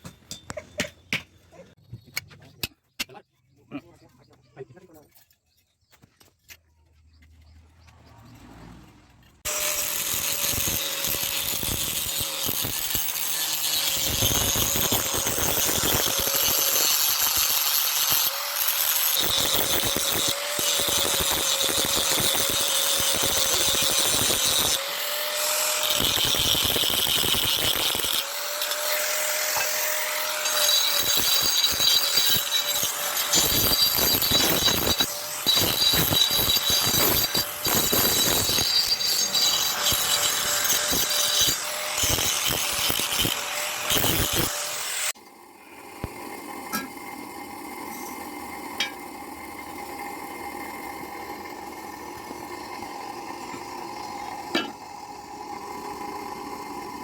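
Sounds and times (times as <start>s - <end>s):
electric power tool running: 9.5s - 57.0s.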